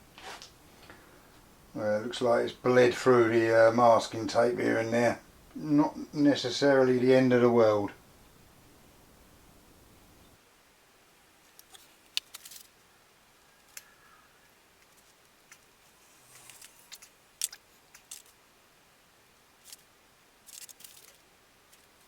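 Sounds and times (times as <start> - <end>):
small objects clicking: 11.5 - 12.7, 16.3 - 18.4, 19.6 - 22.0
scratchy crackles: 19.6 - 22.0.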